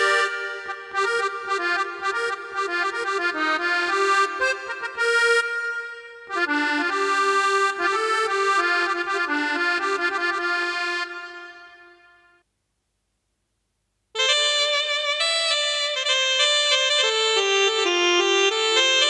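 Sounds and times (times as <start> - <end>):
synthesizer accordion melody: 0.0 - 12.4, 14.2 - 19.0.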